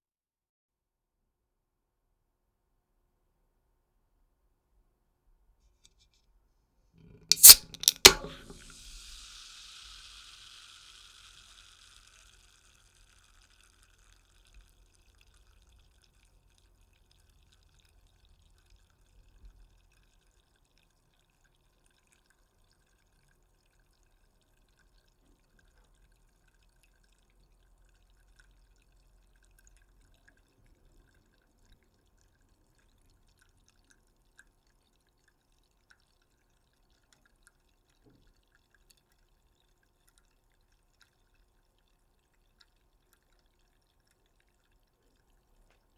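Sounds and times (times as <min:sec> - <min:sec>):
can fizzing: 0:07.3 - 0:15.2.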